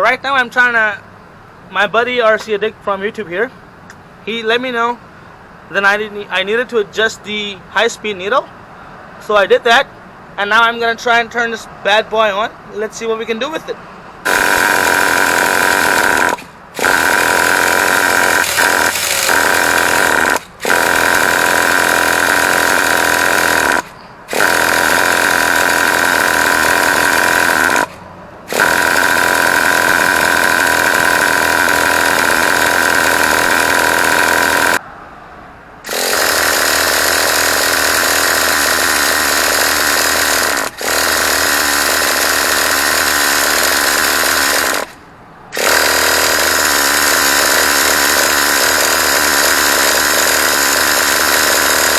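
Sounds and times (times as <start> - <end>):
electric starter cranking engine: 14.2 - 34.8, 35.9 - 51.9.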